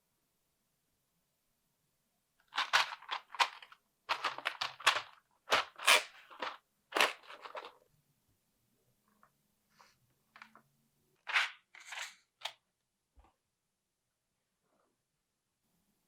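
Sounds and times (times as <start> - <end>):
plastic packaging crinkling: 2.5 - 7.8.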